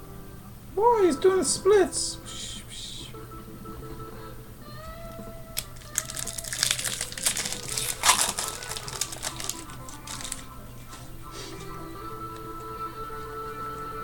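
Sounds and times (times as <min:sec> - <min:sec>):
quiet background music: 0:00.0 - 0:14.0
wrapper crinkling and tearing: 0:05.6 - 0:10.6.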